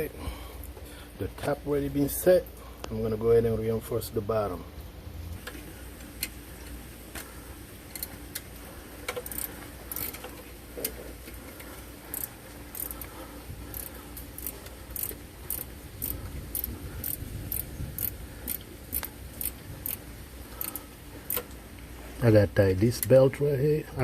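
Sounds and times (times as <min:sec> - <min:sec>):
ratchet wrench clicking: 0:09.0 - 0:10.4, 0:12.1 - 0:13.1, 0:13.7 - 0:20.0, 0:20.6 - 0:21.5.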